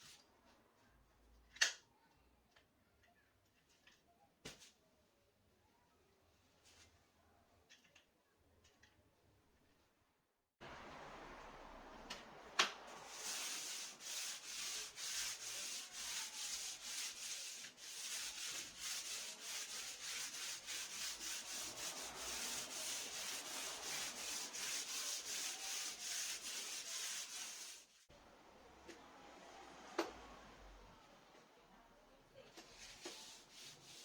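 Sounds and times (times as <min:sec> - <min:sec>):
sandpaper rubbing on wood: 0:12.8 - 0:28.0, 0:32.8 - 0:34.0.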